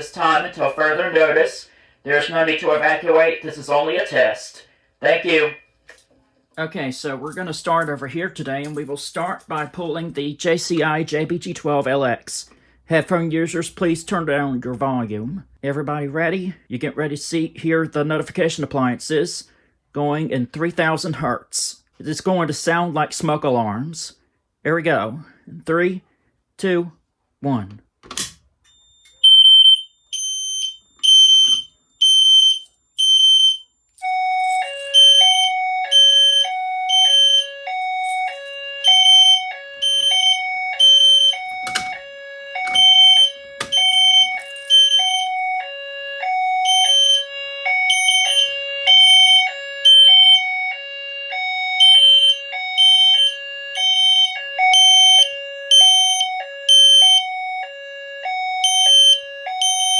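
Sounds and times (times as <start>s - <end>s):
high-pitched alarm beeps: 28.7s - 59.9s
two-tone alternating signal: 29.2s - 57.9s.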